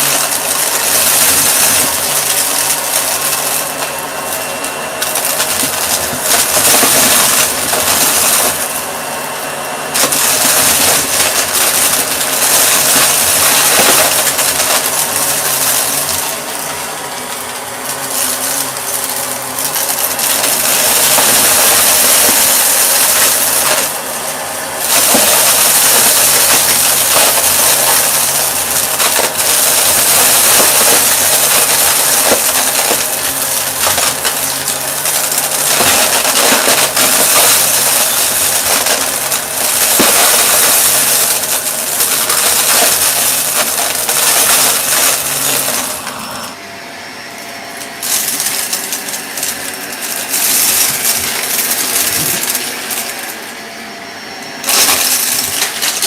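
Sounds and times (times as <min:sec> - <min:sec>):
vacuum cleaner motor hum: 0:45.0 - 0:55.2.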